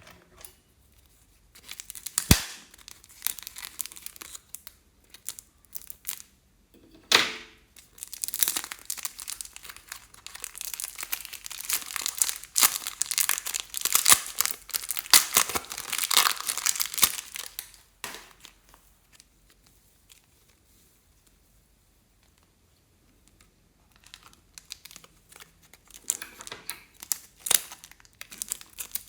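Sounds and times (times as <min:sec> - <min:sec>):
slime crackling and popping: 0:01.6 - 0:06.3, 0:07.8 - 0:18.7, 0:23.9 - 0:26.2, 0:26.9 - 0:29.0.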